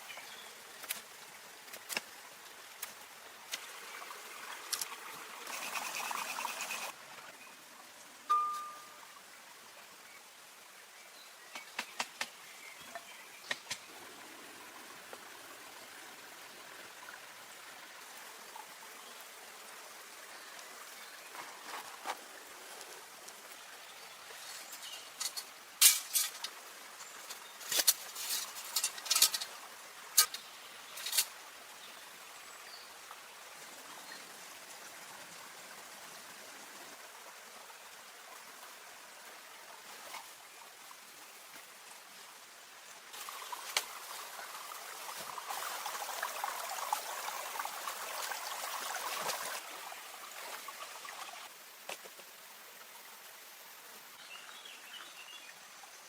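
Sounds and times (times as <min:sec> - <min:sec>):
stream water rushing: 0:00.0 - 0:55.8.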